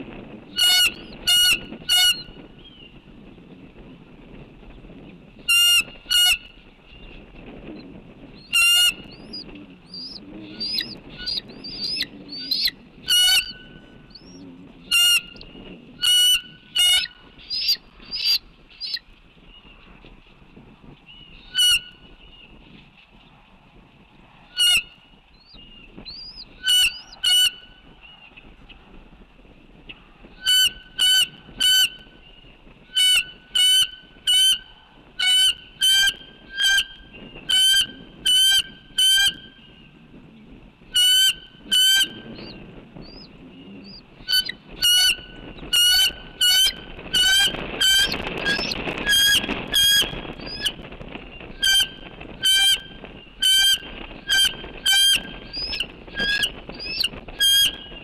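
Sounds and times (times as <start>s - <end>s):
large bird calling: 7.8s - 19.0s, 24.6s - 27.6s, 40.9s - 50.8s, 51.4s - 58.0s.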